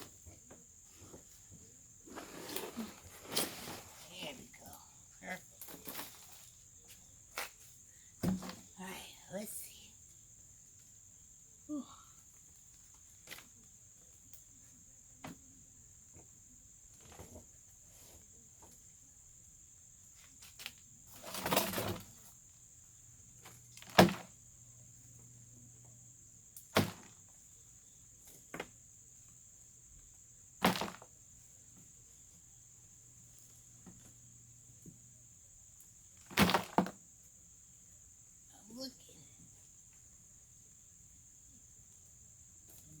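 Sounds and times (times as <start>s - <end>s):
knocks and thuds in bucket: 8.2s - 8.8s, 21.2s - 22.2s, 23.8s - 24.4s, 26.7s - 27.2s, 30.6s - 31.1s, 36.2s - 37.0s.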